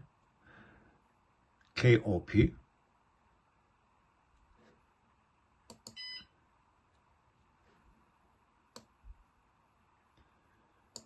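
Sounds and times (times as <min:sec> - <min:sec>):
faint computer mouse clicks: 0:05.7 - 0:06.0, 0:08.7 - 0:08.9.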